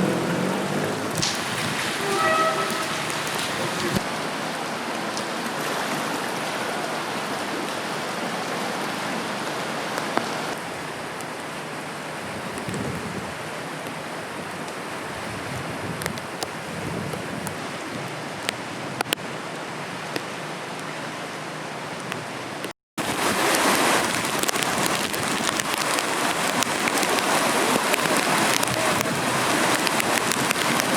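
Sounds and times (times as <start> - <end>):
sharp water drips: 0.0 - 4.1, 23.0 - 30.9
heavy rain: 0.0 - 30.9.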